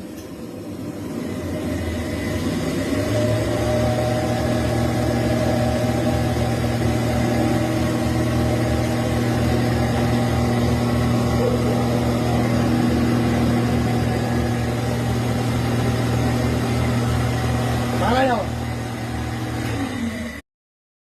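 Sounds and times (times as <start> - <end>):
machine throbbing hum: 0.6 - 19.7.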